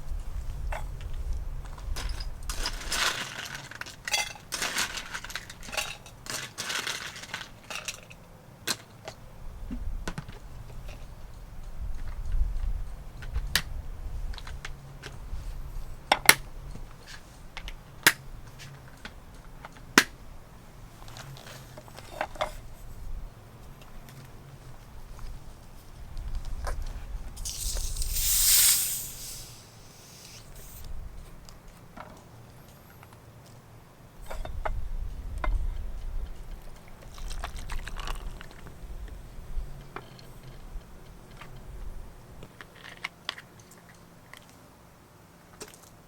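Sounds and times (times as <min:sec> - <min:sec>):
sharp clinks: 0:27.4 - 0:30.8.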